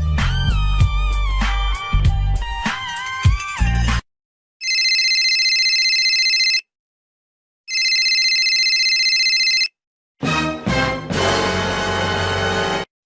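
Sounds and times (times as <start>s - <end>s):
electronic telephone ringing: 4.6s - 6.7s, 7.7s - 9.8s.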